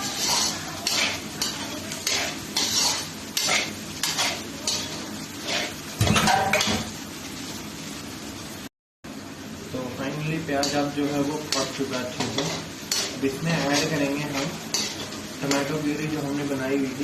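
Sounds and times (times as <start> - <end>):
spoon scraping and stirring in pan: 0.0 - 6.7, 11.5 - 15.8
food sizzling: 0.0 - 17.0.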